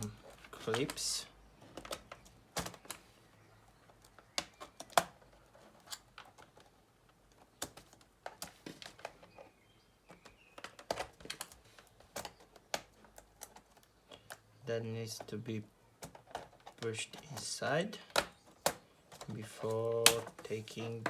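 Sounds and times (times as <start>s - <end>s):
sharp plastic snap: 19.9s - 20.4s.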